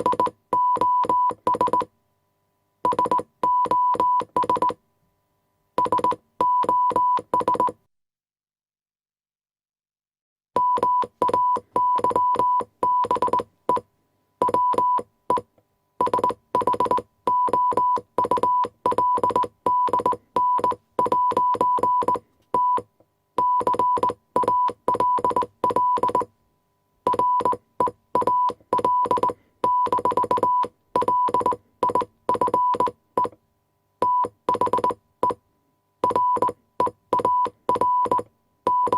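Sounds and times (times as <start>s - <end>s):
morse code beeps: 0.0s - 1.9s, 2.9s - 4.8s, 5.8s - 7.8s, 10.6s - 13.8s, 14.4s - 15.4s, 16.0s - 26.3s, 27.1s - 33.3s, 34.0s - 35.4s, 36.0s - 38.9s.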